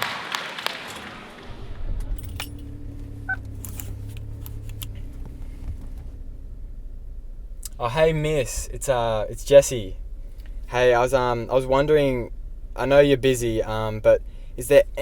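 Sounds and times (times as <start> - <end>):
car engine humming: 1.1 - 15.0
car keys jangling: 1.9 - 6.2.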